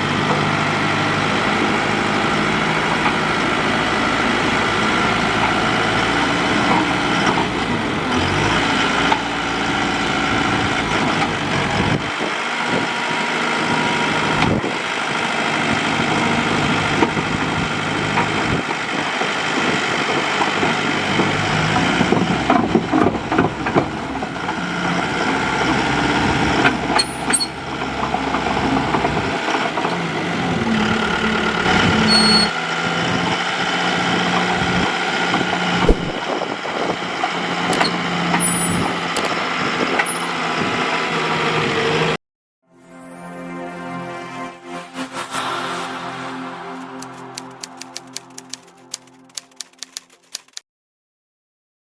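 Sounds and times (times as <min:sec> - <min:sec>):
excavator diesel engine running: 0:00.0 - 0:42.2, 0:44.6 - 0:49.4
knocks and clatter: 0:37.7 - 0:39.4.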